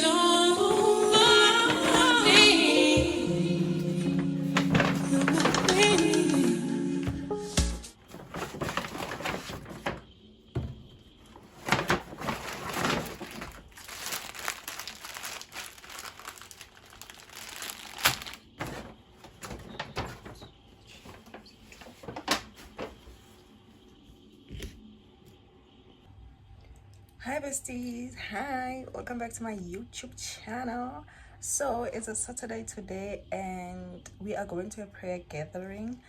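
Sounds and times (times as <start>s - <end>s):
rustling and crinkling: 0.6s - 24.8s.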